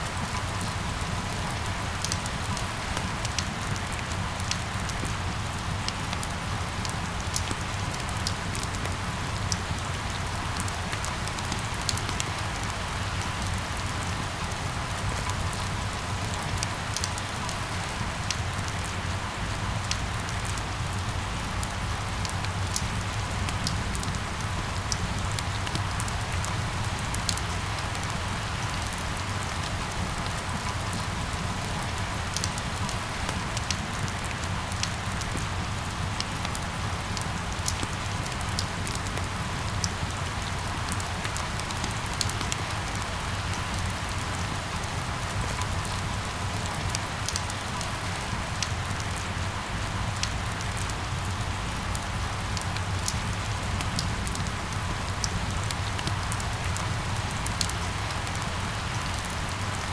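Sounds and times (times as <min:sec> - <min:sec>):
steady rain falling: 0:00.0 - 0:59.9
raindrops ticking: 0:19.8 - 0:59.9.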